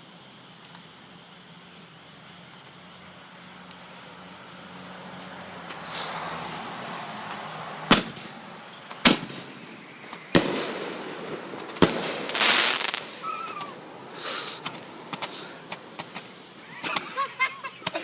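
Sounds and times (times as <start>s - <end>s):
hissing crackle of fireworks: 0.0s - 18.0s
fireworks bangs: 5.6s - 18.0s
falling firework whistle: 7.9s - 15.8s.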